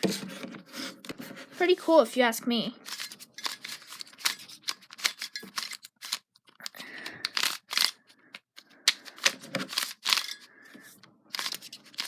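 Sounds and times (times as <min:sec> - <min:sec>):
puzzle cube clicking: 0:03.5 - 0:10.3, 0:11.3 - 0:12.0.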